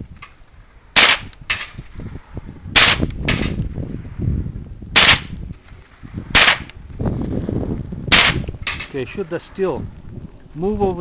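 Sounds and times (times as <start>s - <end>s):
rifle shots: 1.0s - 1.7s, 2.8s - 3.5s, 5.0s - 5.3s, 6.3s - 6.7s, 8.1s - 8.8s.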